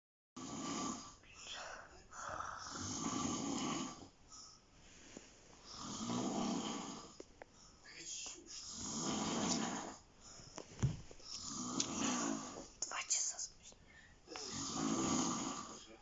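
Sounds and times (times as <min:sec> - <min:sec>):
person snoring: 0:00.4 - 0:04.6, 0:05.6 - 0:07.2, 0:08.5 - 0:10.1, 0:11.2 - 0:12.7, 0:14.3 - 0:16.0.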